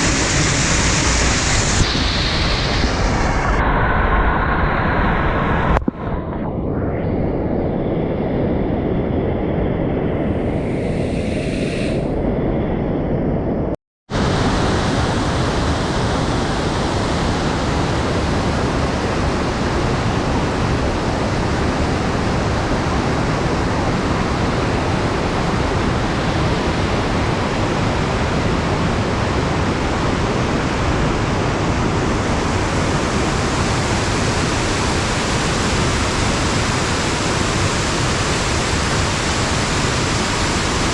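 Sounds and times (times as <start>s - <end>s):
waterfall rushing: 0.0s - 5.7s.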